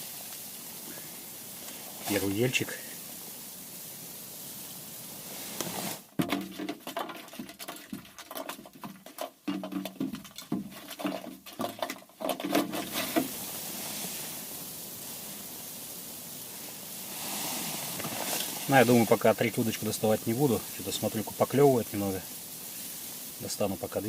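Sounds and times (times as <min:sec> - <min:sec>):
steady hiss: 0:00.0 - 0:24.0
pattering and tapping of handling: 0:05.6 - 0:13.4.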